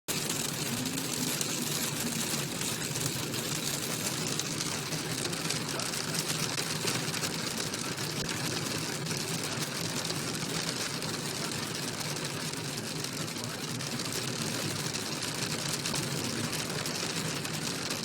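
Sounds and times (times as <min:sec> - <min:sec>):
rain falling: 0:00.1 - 0:11.4.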